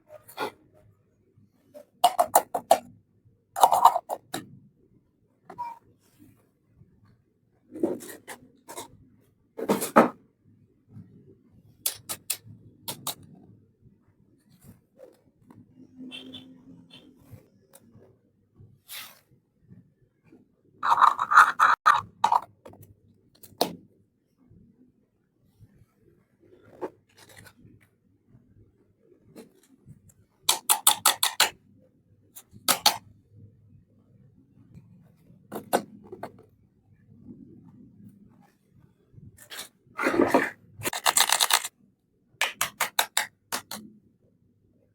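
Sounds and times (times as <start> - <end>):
toy kitchen pieces clicking: 2.0 - 2.8, 3.6 - 4.4, 11.9 - 13.2, 20.8 - 22.5, 30.5 - 31.6, 32.6 - 33.0, 39.5 - 41.7, 42.4 - 43.8
sharp scraping clicks: 30.5 - 31.5, 39.5 - 41.7, 42.4 - 43.8.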